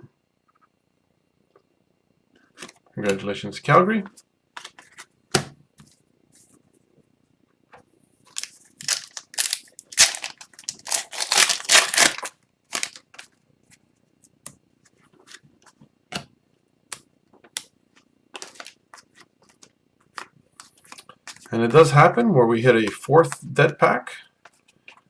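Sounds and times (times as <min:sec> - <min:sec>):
card pack wrapper tearing: 0:08.3 - 0:13.1, 0:18.4 - 0:18.7
cards being handled: 0:08.3 - 0:13.3, 0:18.4 - 0:21.5.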